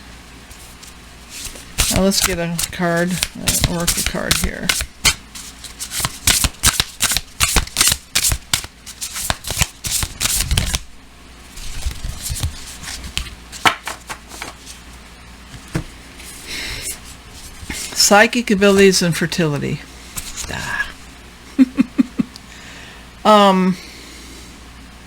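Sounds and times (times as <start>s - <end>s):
cards being shuffled: 0.6s - 10.9s, 11.6s - 14.9s, 20.2s - 20.7s
cards tapping and sliding: 1.4s - 10.8s, 11.6s - 14.8s.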